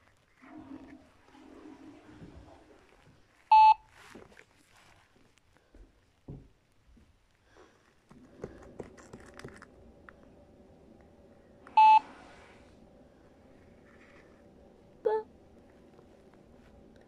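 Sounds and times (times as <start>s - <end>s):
faint steady hum: 0.0s - 17.0s
electronic monitor beep: 3.5s - 3.8s, 11.8s - 12.1s.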